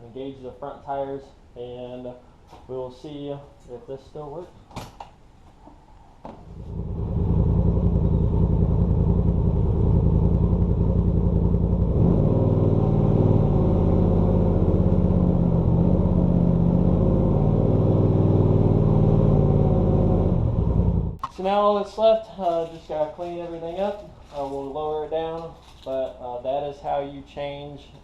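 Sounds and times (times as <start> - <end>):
deep drivetrain hum: 6.4 - 21.2
engine starting and idling: 6.5 - 11.4.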